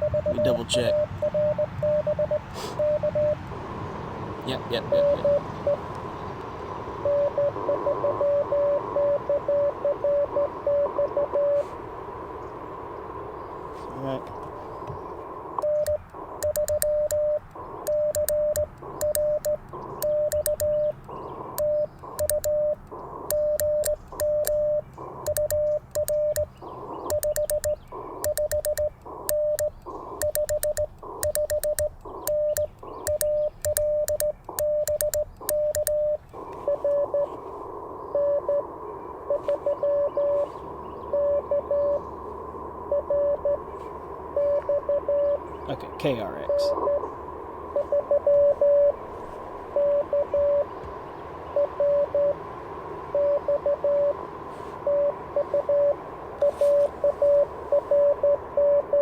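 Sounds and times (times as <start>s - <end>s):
faint morse code beeps: 0.0s - 3.4s, 4.5s - 5.9s, 7.0s - 11.7s, 15.6s - 42.0s, 42.8s - 47.1s, 47.7s - 50.7s, 51.5s - 52.4s, 53.1s - 59.0s
morse code beeps: 0.0s - 3.4s, 4.5s - 5.9s, 7.0s - 11.7s, 15.6s - 37.4s, 38.1s - 38.7s, 39.3s - 42.0s, 42.8s - 43.6s, 44.3s - 47.1s, 47.7s - 50.7s, 51.5s - 52.4s, 53.1s - 59.0s
radio band hiss: 0.2s - 1.2s, 2.4s - 3.2s, 4.4s - 6.0s, 7.0s - 50.9s, 53.2s - 59.0s
paddle clicks: 15.6s - 24.6s, 25.3s - 36.4s.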